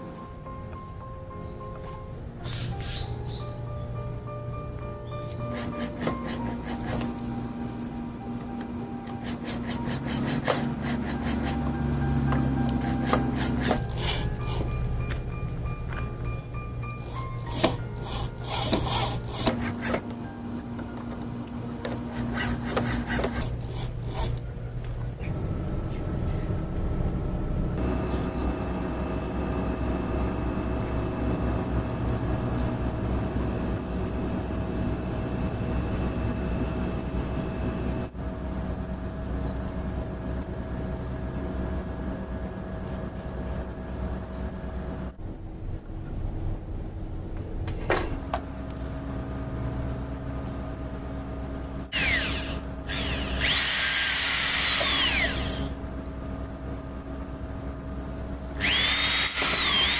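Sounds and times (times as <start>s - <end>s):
music with long held chords: 0.0s - 51.9s
rubbing and scraping on wood: 5.5s - 7.3s, 9.2s - 11.6s, 21.9s - 24.4s.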